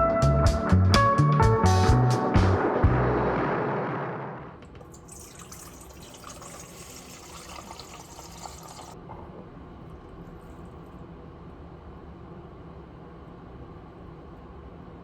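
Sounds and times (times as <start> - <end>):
water running from a tap: 4.8 - 9.0.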